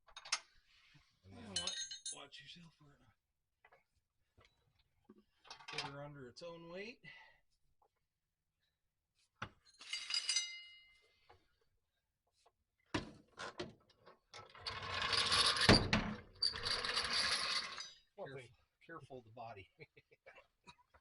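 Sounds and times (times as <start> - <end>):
metal tools clanking: 1.4 - 2.3, 9.6 - 11.0, 16.4 - 18.1
rough scraping and rattling: 14.4 - 18.0.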